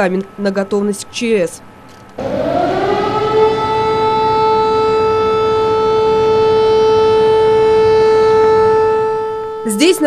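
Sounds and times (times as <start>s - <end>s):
civil defence siren steady tone: 2.2s - 10.0s.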